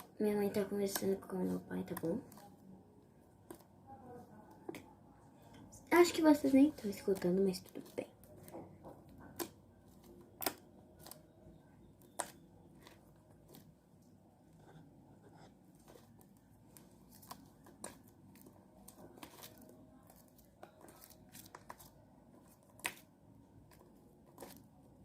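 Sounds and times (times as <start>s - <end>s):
slime clicking and popping: 9.1s - 11.3s.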